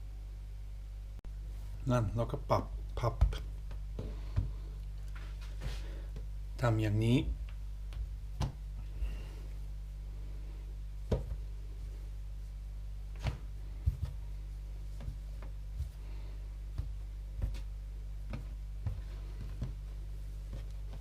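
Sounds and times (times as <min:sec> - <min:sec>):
low hum: 0:00.0 - 0:21.0
dough knocking on work surface: 0:16.7 - 0:19.8.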